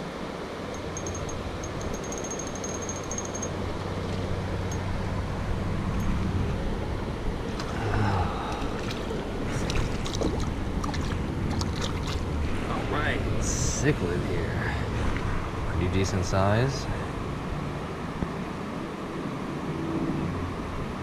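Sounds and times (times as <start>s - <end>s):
wind: 0.0s - 21.0s
moving water: 3.3s - 15.8s
clicks and splashes: 7.5s - 12.3s.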